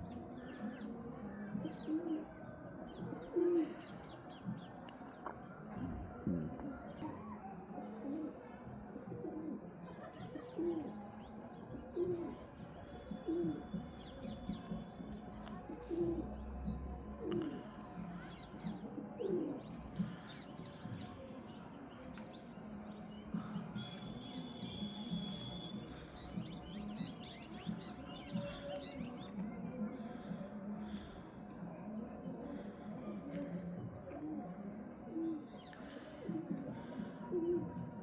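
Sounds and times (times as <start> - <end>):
pigeon cooing: 1.4 - 4.6, 5.7 - 14.8, 15.4 - 20.4, 32.2 - 38.0.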